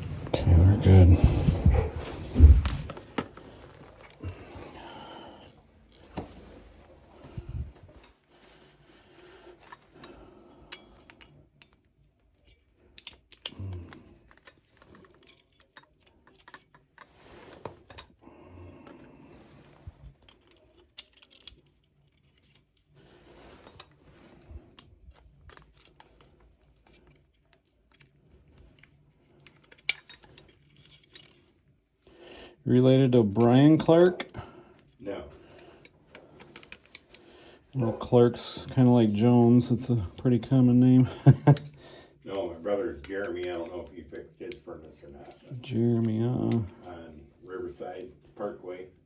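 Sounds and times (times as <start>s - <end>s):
metallic clicks of tools: 9.6s - 17.1s.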